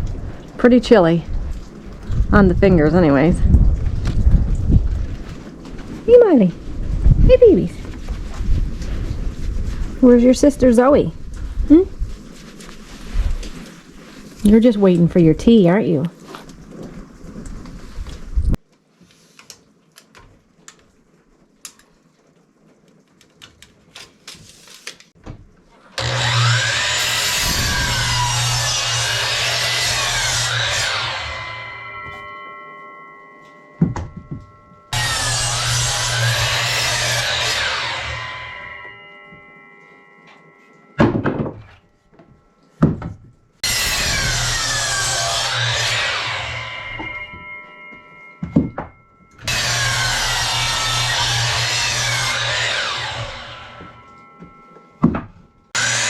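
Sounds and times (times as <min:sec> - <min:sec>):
wood and tools being handled: 0:11.2 - 0:15.0
power saw cutting lumber: 0:25.9 - 0:32.3, 0:34.9 - 0:39.1, 0:43.6 - 0:47.5, 0:49.4 - 0:54.2, 0:55.8 - 0:56.0.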